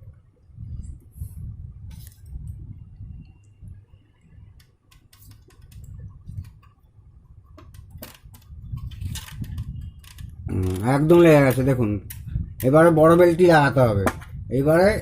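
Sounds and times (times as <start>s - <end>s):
small clicks of hand work: 4.6s - 6.8s.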